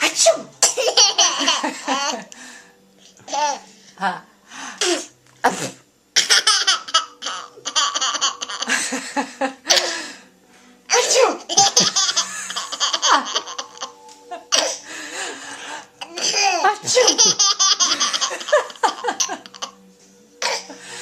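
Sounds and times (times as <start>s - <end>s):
child laughing: 11.5s - 14.6s, 16.0s - 19.8s.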